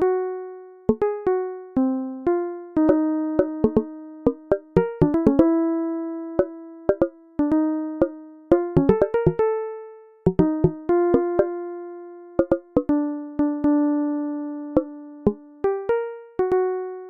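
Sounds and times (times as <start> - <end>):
slow sparse melody of single notes: 0.9 - 2.0, 2.8 - 5.7, 6.4 - 9.5, 10.3 - 11.7, 12.4 - 16.8.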